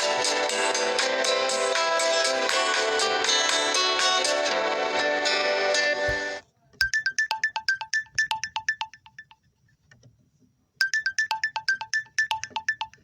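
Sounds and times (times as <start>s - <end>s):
guitar-like ringtone tone: 6.8s - 9.4s, 10.8s - 13.0s
smartphone ringtone: 6.8s - 9.4s, 10.8s - 13.0s.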